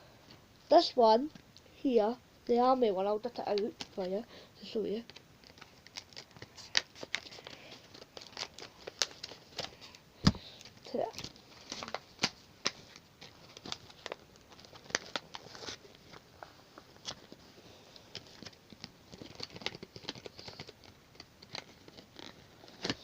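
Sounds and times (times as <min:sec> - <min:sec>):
packaging crinkling and rustling: 0:05.0 - 0:23.0.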